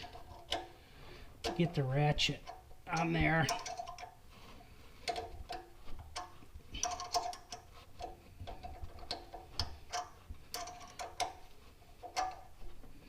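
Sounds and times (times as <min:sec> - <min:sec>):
metal tools clinking: 0:01.4 - 0:04.2, 0:05.0 - 0:12.6.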